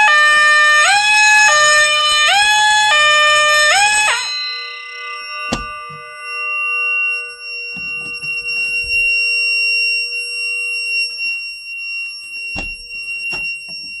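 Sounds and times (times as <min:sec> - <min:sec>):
fire alarm tone: 0:00.0 - 0:14.0.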